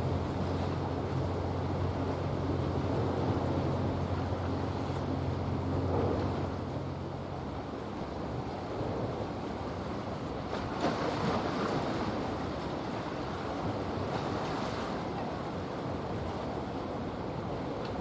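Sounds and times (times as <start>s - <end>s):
sea water rushing: 8.8s - 18.0s.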